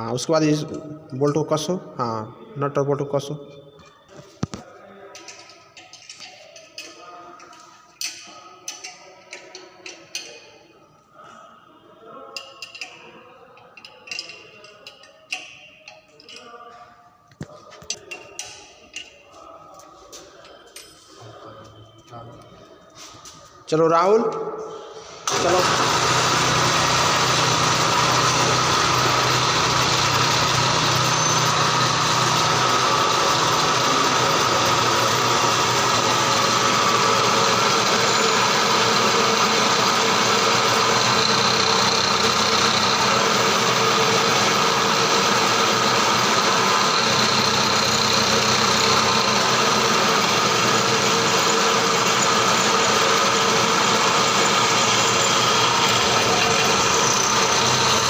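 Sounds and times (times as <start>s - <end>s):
electric drill drilling metal: 25.2s - 58.0s.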